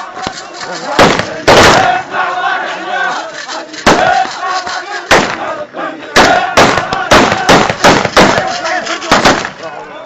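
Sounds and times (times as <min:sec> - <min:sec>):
men shouting: 0:00.0 - 0:10.0
gunshots: 0:00.2 - 0:02.1, 0:03.8 - 0:09.7.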